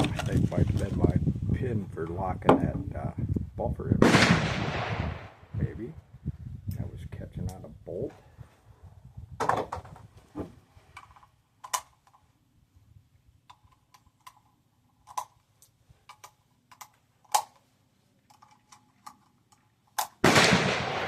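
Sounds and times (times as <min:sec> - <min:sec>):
rifle parts clicking and clacking: 0:10.9 - 0:12.3, 0:13.4 - 0:20.2.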